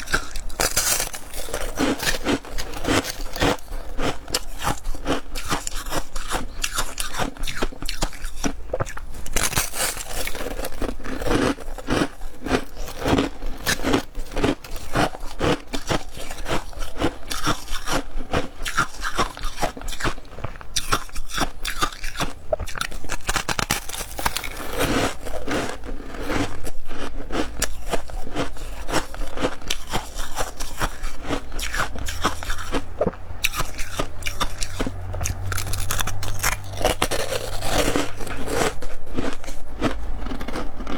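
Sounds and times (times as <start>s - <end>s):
crunching ice: 0.0s - 40.9s.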